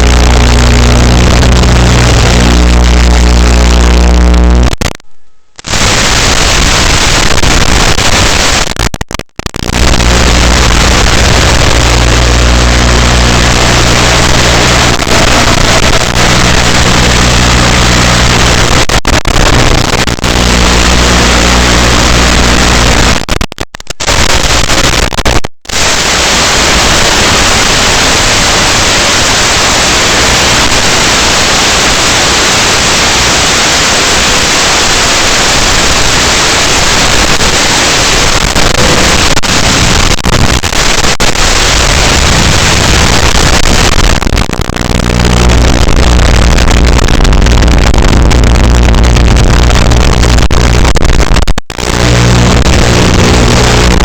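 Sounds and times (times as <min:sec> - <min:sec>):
low hum: 0:00.0 - 0:06.6, 0:09.6 - 0:18.8
radio static hiss: 0:00.0 - 0:54.0.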